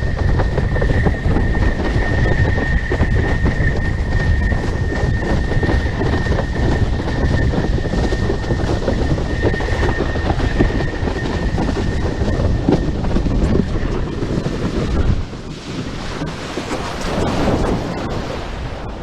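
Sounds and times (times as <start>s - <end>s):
high steady whistle of windsurf board: 0.0s - 19.0s
rushing wind: 0.0s - 19.0s
water noise: 12.6s - 19.0s.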